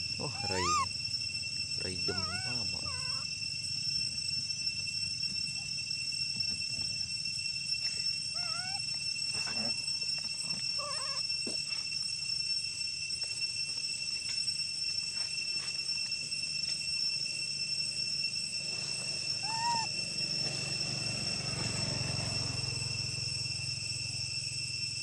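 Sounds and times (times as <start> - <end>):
steady high-pitched whine: 0.0 - 25.0
monkey chirping calls: 0.2 - 0.9, 1.8 - 3.3, 8.3 - 9.8, 10.6 - 11.2, 19.4 - 20.0.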